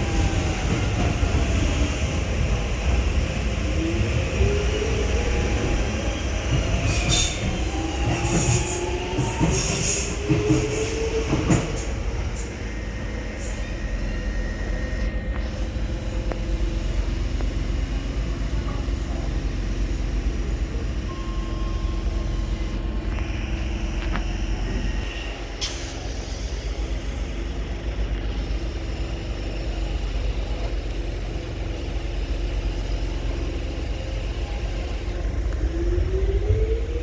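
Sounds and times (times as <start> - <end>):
train rumble: 0.0 - 37.0
wheels squealing on rail: 4.5 - 23.0
electric train motor whine: 7.6 - 17.1, 21.0 - 27.4.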